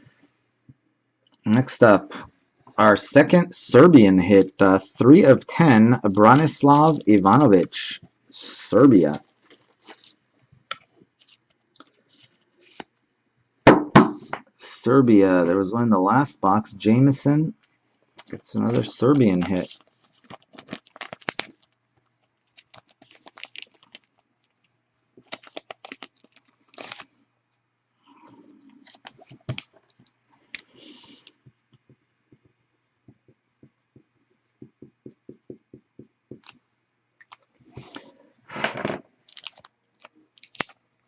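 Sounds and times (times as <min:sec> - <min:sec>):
trading cards handled on table: 0:08.7 - 0:12.9, 0:18.2 - 0:21.7, 0:28.6 - 0:30.7, 0:34.6 - 0:36.6.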